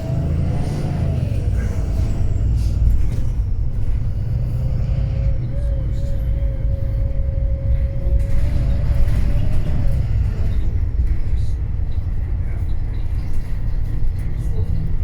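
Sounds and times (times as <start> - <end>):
diesel bus engine rumble: 0.0 - 15.0.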